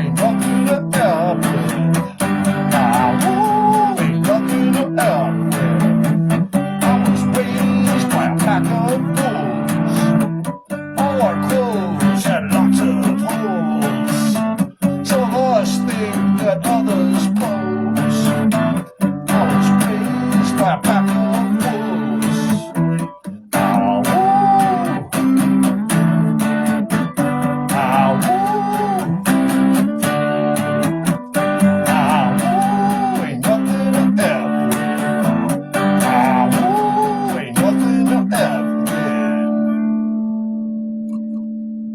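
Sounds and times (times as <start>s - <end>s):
acoustic guitar music: 0.0s - 41.9s.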